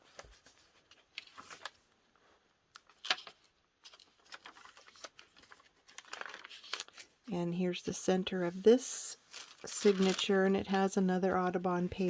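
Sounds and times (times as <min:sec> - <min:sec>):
paper pages rustling: 0:00.0 - 0:12.0.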